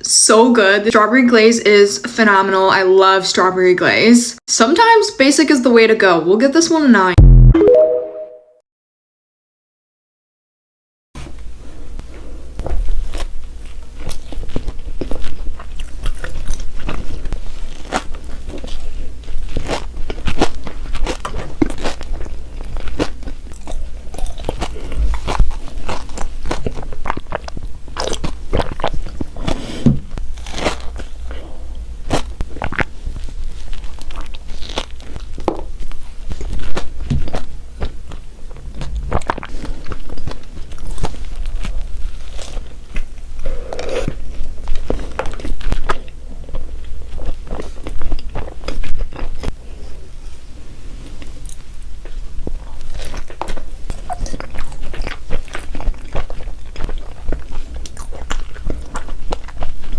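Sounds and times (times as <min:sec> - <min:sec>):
crunchy eating and chewing: 0:12.2 - 0:59.9.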